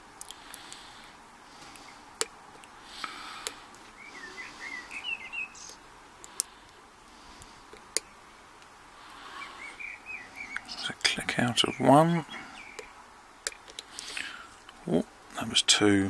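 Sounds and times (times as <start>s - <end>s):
bird singing: 3.0s - 5.8s, 9.0s - 15.5s.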